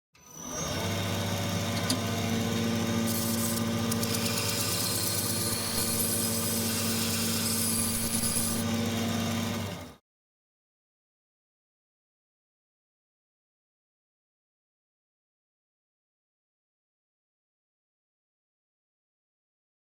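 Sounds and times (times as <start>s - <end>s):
belt grinder running: 0.5s - 10.0s
blade hissing on grinder belt: 2.8s - 8.7s.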